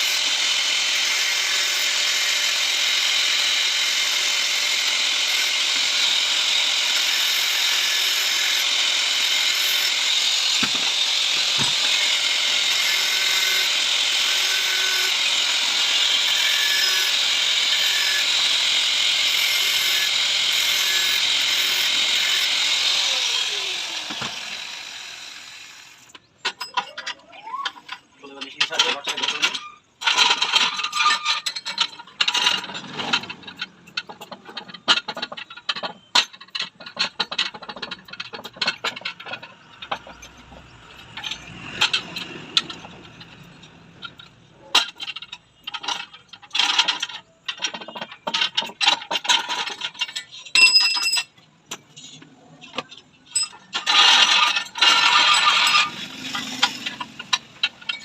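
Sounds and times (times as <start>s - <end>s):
metal tools clinking and scraping: 19.4s - 58.0s.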